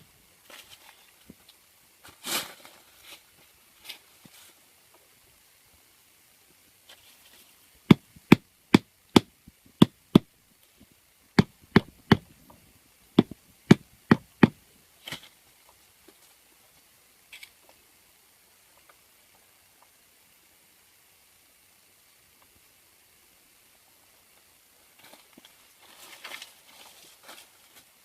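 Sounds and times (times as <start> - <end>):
faint rustles: 0.0 - 5.4, 6.8 - 7.8, 24.3 - 28.0
sharp knocks: 11.4 - 12.3, 13.2 - 14.6.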